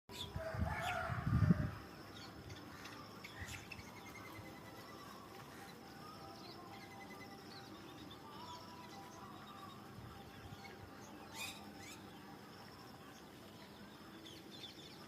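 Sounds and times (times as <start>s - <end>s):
birds chirping and calling: 0.1s - 15.0s
thin steady high tone: 2.0s - 15.0s.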